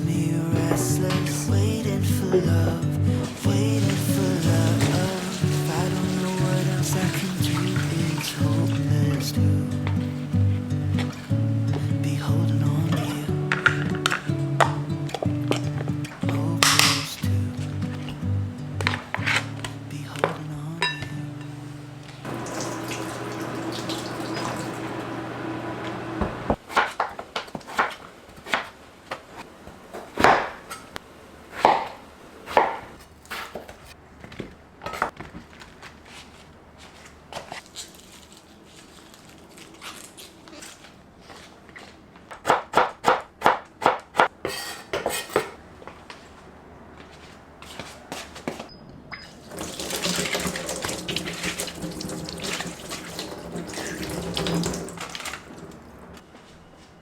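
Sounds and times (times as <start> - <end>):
water running from a tap: 3.4 - 9.1, 22.3 - 25.3, 49.4 - 56.2
dishes and utensils clinking: 16.6 - 17.4, 20.2 - 21.6, 44.5 - 45.6.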